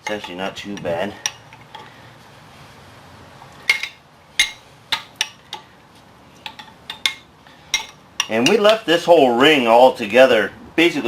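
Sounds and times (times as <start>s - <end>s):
metal tool clinking on screw: 0.0s - 1.9s, 6.4s - 8.8s.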